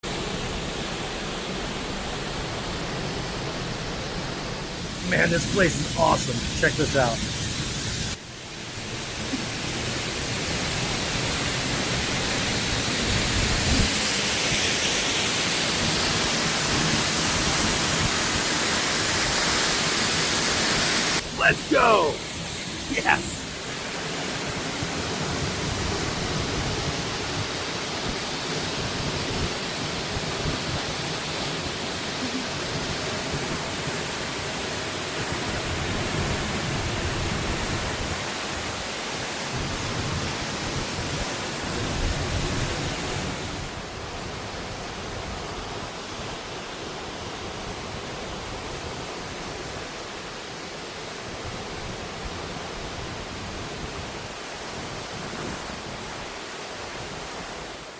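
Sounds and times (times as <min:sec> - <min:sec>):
waterfall pouring: 0:08.5 - 0:24.1.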